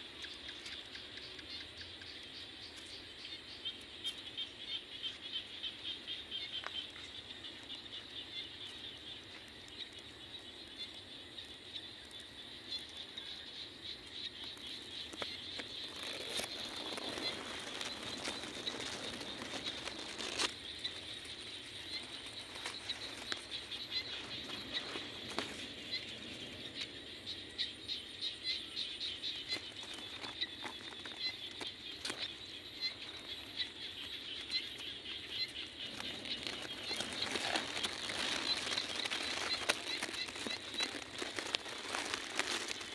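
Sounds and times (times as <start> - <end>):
insects trilling: 0.0 - 42.9
rustling crackle: 14.0 - 42.9.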